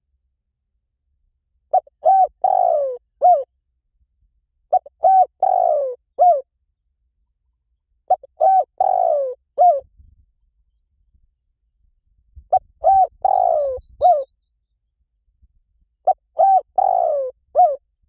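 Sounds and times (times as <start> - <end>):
dove cooing: 1.7 - 3.5, 4.7 - 6.5, 8.1 - 9.9, 12.5 - 14.3, 16.0 - 17.8.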